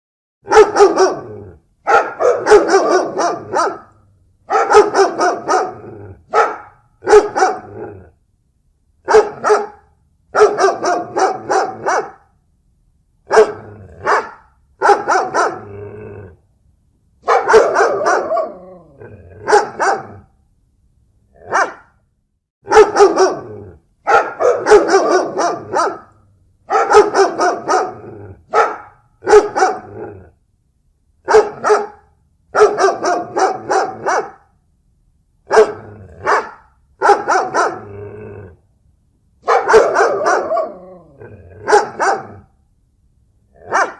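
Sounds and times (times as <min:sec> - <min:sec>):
dog barking: 0:00.4 - 0:08.0, 0:09.0 - 0:12.3, 0:13.3 - 0:15.7, 0:17.2 - 0:20.3, 0:21.4 - 0:22.0, 0:22.6 - 0:30.1, 0:31.2 - 0:34.5, 0:35.5 - 0:37.9, 0:39.4 - 0:42.5, 0:43.6 - 0:43.9.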